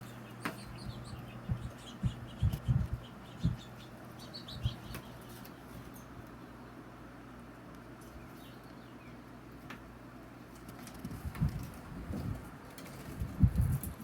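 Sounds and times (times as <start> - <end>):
squirrels chirping: 0.0 - 6.9, 8.0 - 9.5
steady low hum: 0.0 - 14.0.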